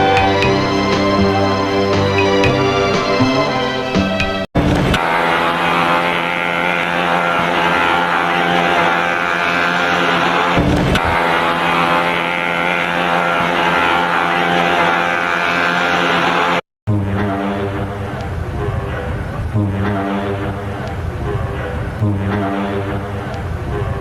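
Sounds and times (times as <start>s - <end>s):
ship's horn blast: 0.0s - 4.3s.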